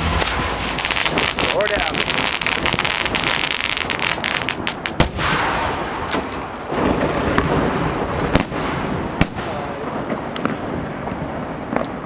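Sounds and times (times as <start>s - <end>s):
rushing hiss: 0.0s - 4.6s
firework shell bursts: 0.0s - 5.4s
fireworks crackling: 0.0s - 12.0s.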